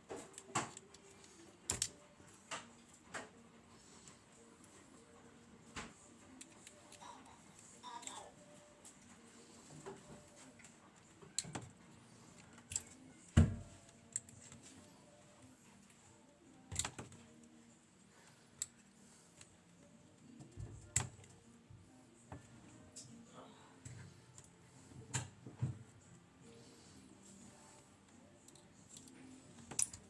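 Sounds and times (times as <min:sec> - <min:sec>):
hand tools clicking and tapping: 0:00.1 - 0:03.3, 0:16.7 - 0:17.5.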